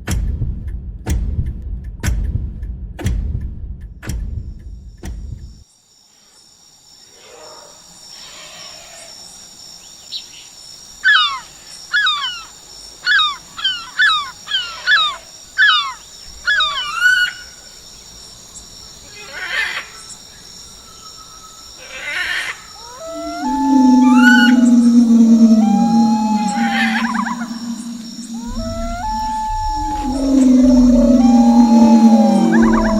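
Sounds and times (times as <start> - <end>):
downward-sliding bird chirps: 23.0 - 32.9
high-pitched drone: 23.0 - 32.9
low rumble: 23.0 - 32.9.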